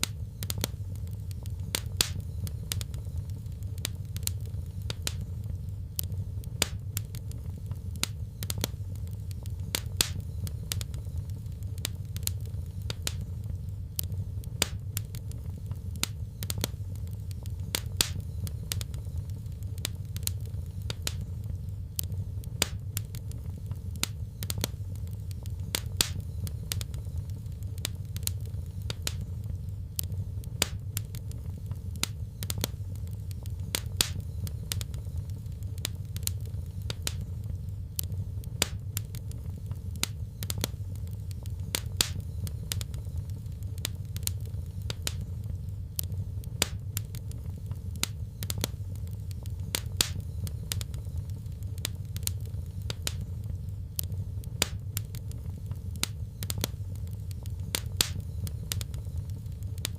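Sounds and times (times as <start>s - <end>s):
fire crackling with pops: 0.0s - 59.9s.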